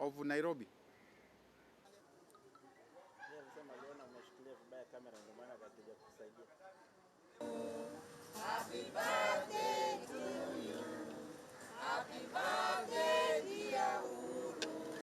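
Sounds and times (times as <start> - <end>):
group of voices singing: 7.4 - 15.0.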